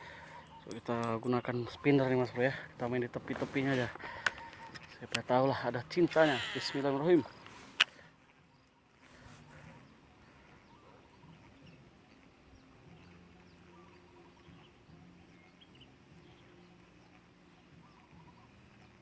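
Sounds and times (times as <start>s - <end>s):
faint bird chirps: 6.0s - 19.0s.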